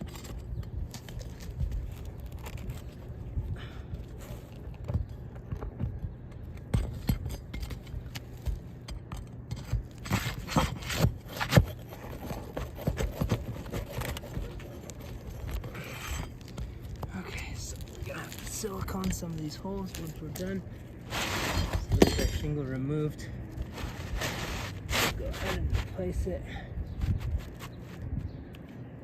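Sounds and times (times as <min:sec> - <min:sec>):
hand tool scraping shingle: 0:06.6 - 0:26.2.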